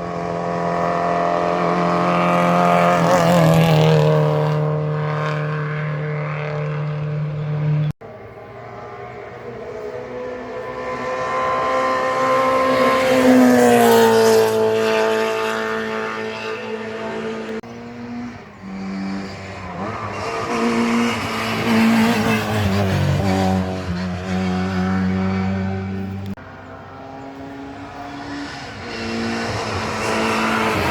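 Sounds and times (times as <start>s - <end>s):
car accelerating through gears: 0.0s - 7.9s, 8.6s - 30.9s
racing car engines at high revs: 0.0s - 30.9s.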